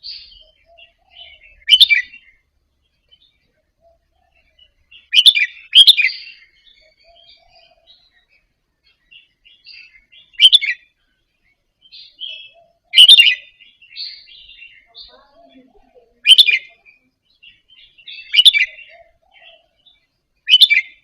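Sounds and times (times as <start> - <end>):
soft bird twittering: 0.0 - 21.0
bird whistled phrases: 12.2 - 13.5, 16.2 - 16.8, 18.0 - 19.7, 20.5 - 21.0.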